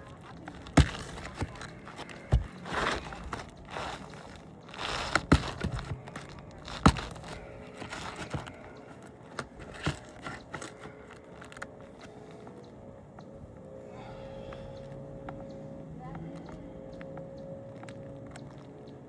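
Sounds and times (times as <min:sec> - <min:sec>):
shingle scraping and crinkling: 0:00.0 - 0:12.7.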